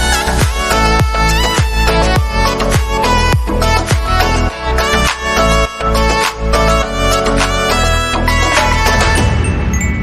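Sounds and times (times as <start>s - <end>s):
music with bass beat: 0.0s - 9.4s.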